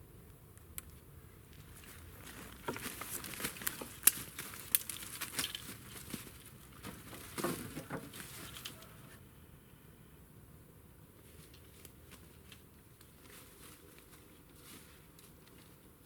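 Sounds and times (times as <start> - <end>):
rustling and crackling: 0.9 - 9.1, 11.2 - 16.0.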